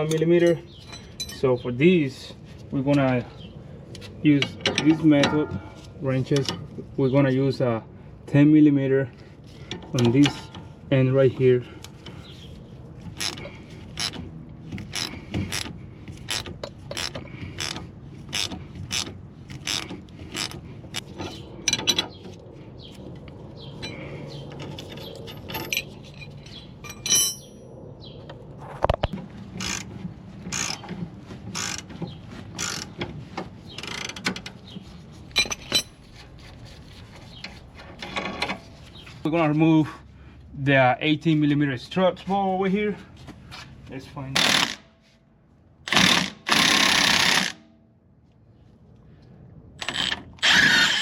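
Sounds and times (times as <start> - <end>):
metallic clink: 24.9 - 27.7.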